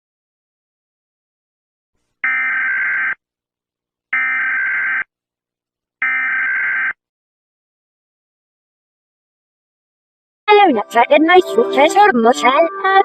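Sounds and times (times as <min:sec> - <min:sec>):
electronic alarm buzzy beeps: 0:02.2 - 0:03.2, 0:04.2 - 0:05.1, 0:06.0 - 0:07.0.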